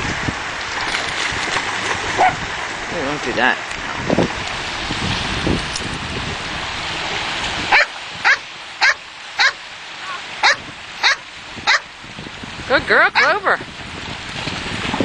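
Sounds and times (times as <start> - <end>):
surf hiss: 0.0 - 15.0
wind: 0.0 - 15.0
dog barking: 2.2 - 2.4, 7.7 - 11.9, 13.2 - 13.4.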